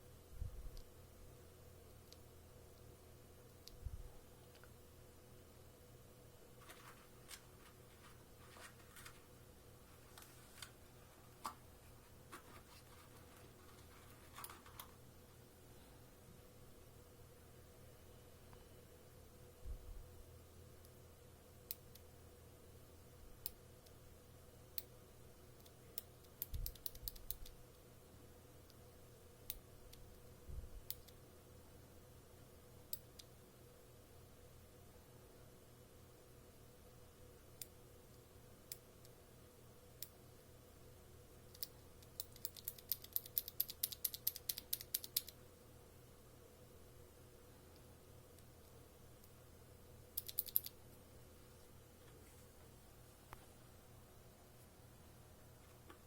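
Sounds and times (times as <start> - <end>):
mechanical keyboard clicks: 50.2 - 50.7.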